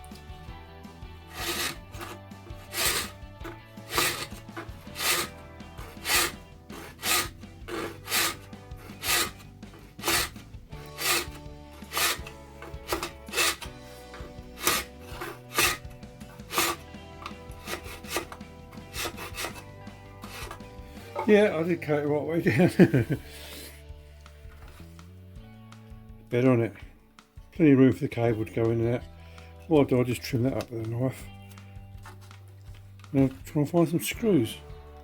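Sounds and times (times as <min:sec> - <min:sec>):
file rasping plastic: 0:01.3 - 0:21.4.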